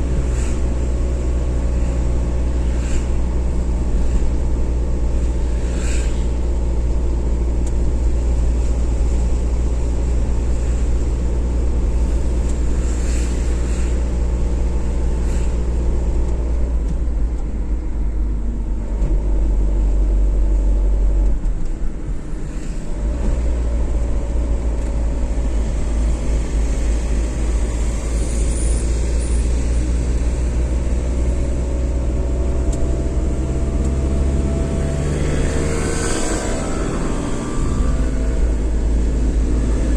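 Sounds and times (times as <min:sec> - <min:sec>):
car driving on motorway: 0:00.0 - 0:39.9.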